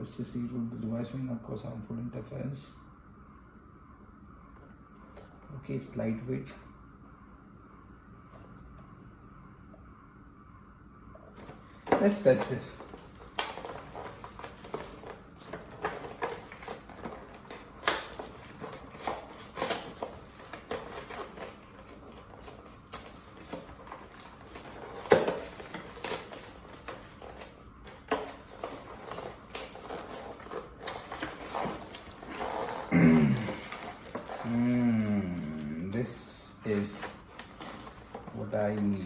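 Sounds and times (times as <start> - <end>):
headset rustling: 11.4 - 39.0.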